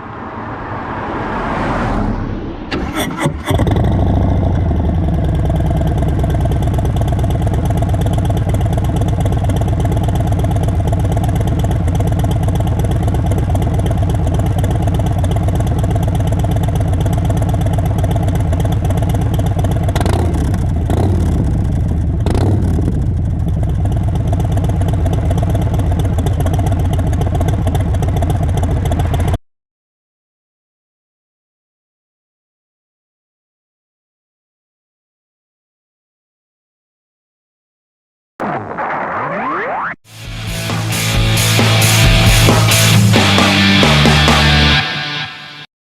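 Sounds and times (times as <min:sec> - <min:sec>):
motorcycle throttle blips: 0:02.7 - 0:29.4
motorcycle engine idling: 0:03.6 - 0:29.4.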